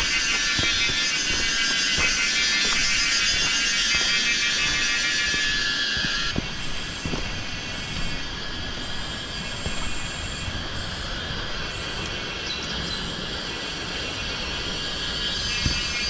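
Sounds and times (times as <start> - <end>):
outdoor rushing noise: 0.0 - 11.2.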